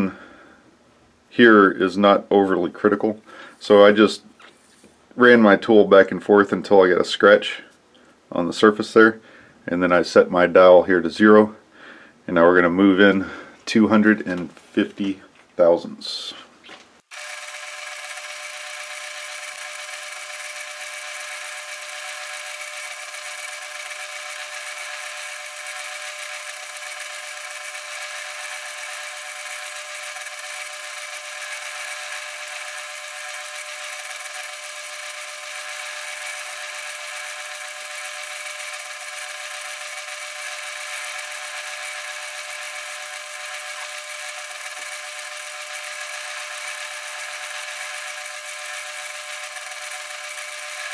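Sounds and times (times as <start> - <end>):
lathe whirring: 17.0 - 50.9.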